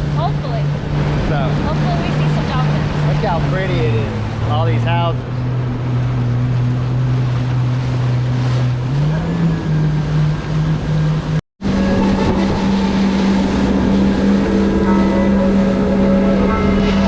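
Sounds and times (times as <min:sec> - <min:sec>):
jet ski engine: 0:00.0 - 0:17.0
wind noise: 0:11.7 - 0:17.0
rushing water: 0:12.6 - 0:16.8.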